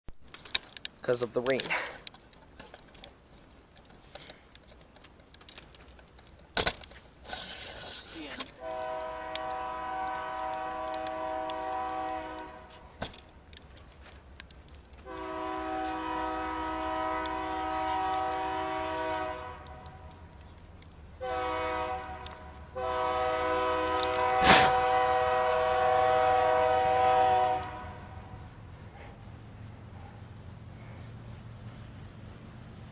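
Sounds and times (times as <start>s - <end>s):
locomotive air horn blasts: 8.6s - 12.9s, 15.0s - 20.2s, 21.2s - 28.4s.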